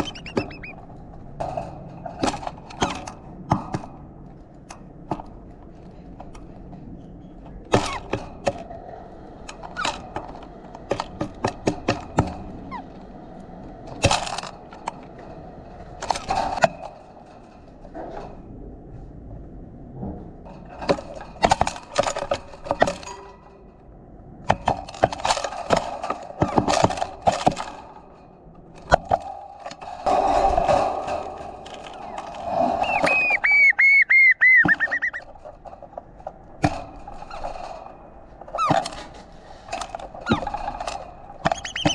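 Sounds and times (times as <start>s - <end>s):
bird calling short falling notes: 0.0s - 0.8s, 32.8s - 35.2s, 41.6s - 41.9s
birds pecking and cracking seed: 0.0s - 4.0s, 28.8s - 41.9s.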